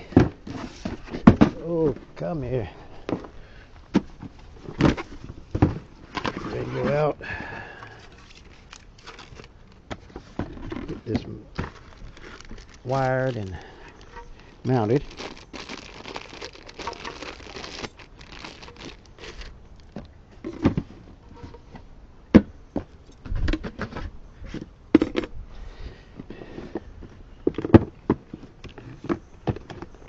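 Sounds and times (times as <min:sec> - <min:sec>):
rustling and crinkling: 0:00.0 - 0:21.9.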